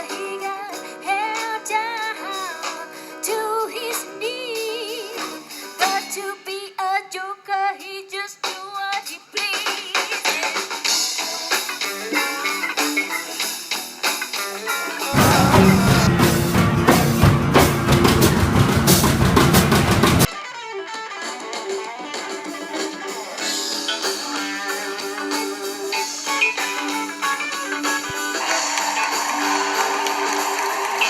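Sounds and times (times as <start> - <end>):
drums and bass: 9.7 - 20.3
guitar music: 15.1 - 21.2.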